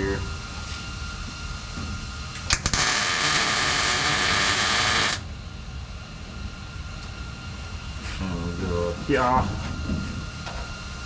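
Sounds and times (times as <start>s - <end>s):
welder arc striking clicks: 2.4s - 5.2s
welding arc crackle: 2.4s - 5.2s.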